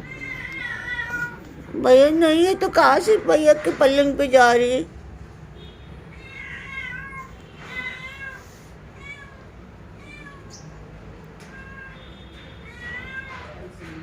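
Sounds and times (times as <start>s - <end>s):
cat meowing: 0.0s - 2.2s, 6.1s - 10.7s, 11.4s - 13.7s.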